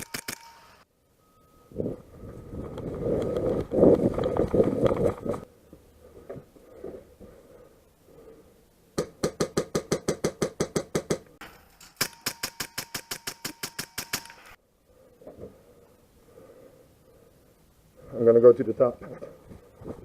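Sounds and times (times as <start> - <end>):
airsoft gun full-auto bursts: 0.0 - 0.8, 12.0 - 14.5.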